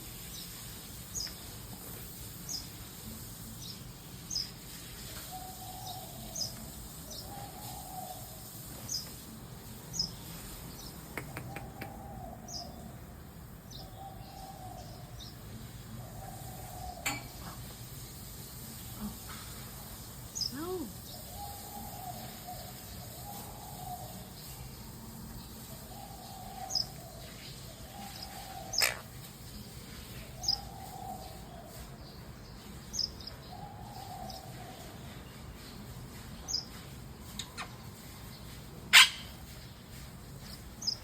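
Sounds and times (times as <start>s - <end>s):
parrots chirping: 28.0s - 29.2s, 38.9s - 39.4s
parrots warbling calls: 28.0s - 29.2s, 38.9s - 39.4s.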